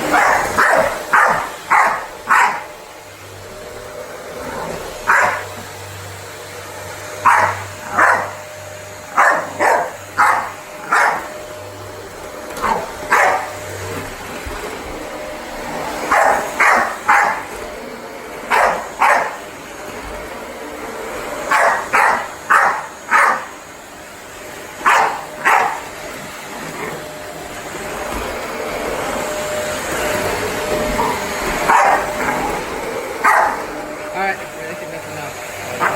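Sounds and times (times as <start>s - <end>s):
vacuum cleaner droning: 0.0s - 35.9s
dog barking: 0.1s - 2.7s, 4.5s - 5.6s, 7.2s - 8.4s, 9.1s - 11.4s, 12.6s - 13.6s, 16.1s - 17.5s, 18.5s - 19.4s, 21.5s - 23.6s, 24.8s - 25.9s, 31.0s - 32.6s, 33.2s - 33.8s.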